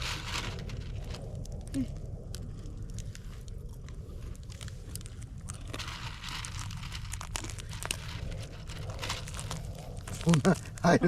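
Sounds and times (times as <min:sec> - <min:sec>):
steady hiss: 0:00.0 - 0:01.6
campfire crackling and popping: 0:00.0 - 0:11.0.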